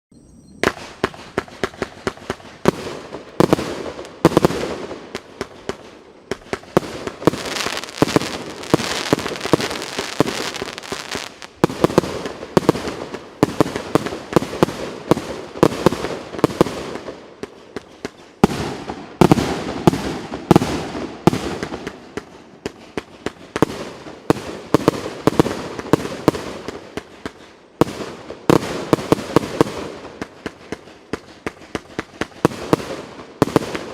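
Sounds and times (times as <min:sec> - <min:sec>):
firework battery firing: 0:00.6 - 0:17.2.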